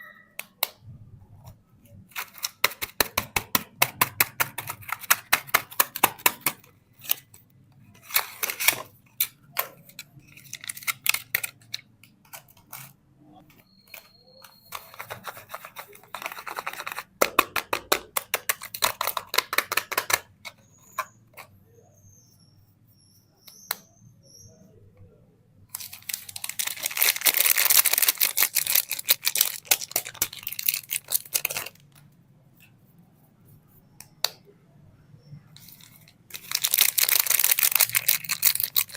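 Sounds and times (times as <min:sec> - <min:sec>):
wrapping crinkling and rustling: 0:09.9 - 0:13.0, 0:25.8 - 0:31.9, 0:35.6 - 0:38.9
wrapper crackling clicks: 0:10.0 - 0:12.4, 0:25.8 - 0:31.9, 0:35.8 - 0:38.9.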